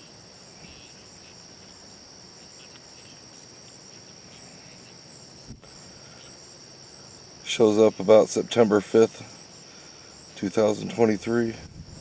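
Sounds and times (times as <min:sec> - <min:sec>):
insect chorus trilling: 0:00.0 - 0:12.0.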